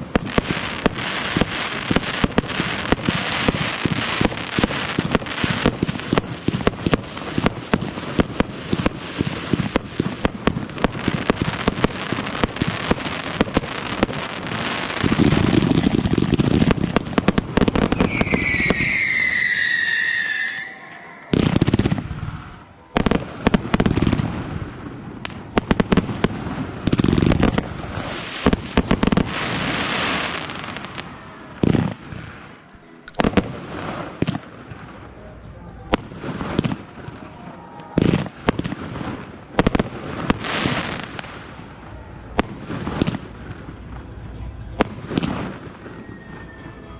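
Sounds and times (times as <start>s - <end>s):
fireworks crackling: 0.0s - 46.9s
falling firework whistles: 15.3s - 22.0s, 45.2s - 46.9s.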